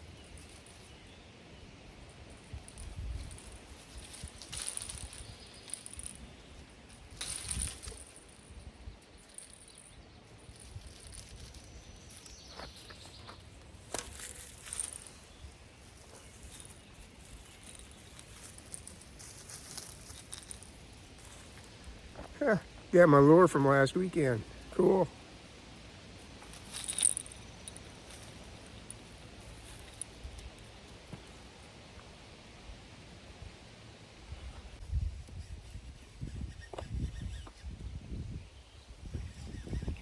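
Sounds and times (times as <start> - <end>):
handling rustles and clicks: 0.0 - 1.1, 2.3 - 22.9, 24.1 - 31.6
faint outdoor ambience: 0.0 - 40.0.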